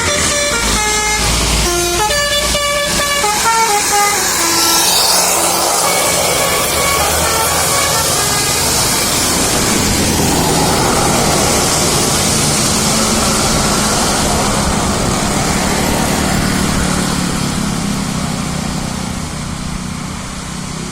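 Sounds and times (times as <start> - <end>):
bus engine running: 0.0 - 20.9
road and tyre noise: 0.0 - 20.9.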